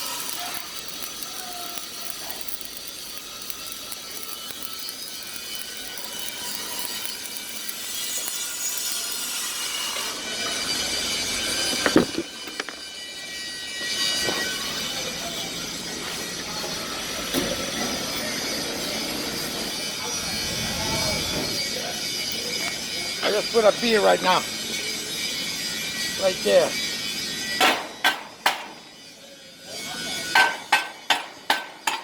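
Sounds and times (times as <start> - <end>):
welding arc crackling hiss: 0.0 - 28.7.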